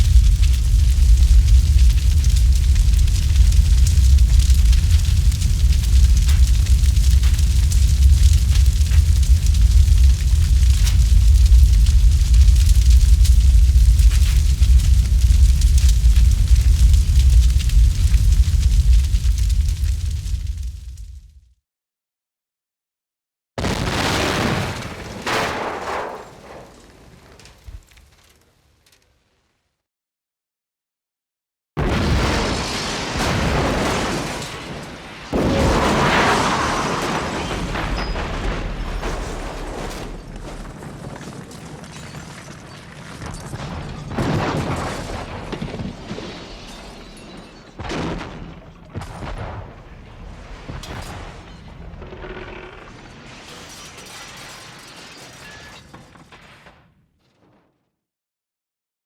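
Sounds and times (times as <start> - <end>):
debris crashing: 0.0 - 21.2, 23.6 - 28.5, 31.8 - 56.8
explosion blasts: 0.0 - 21.3, 23.6 - 27.3, 31.8 - 52.2.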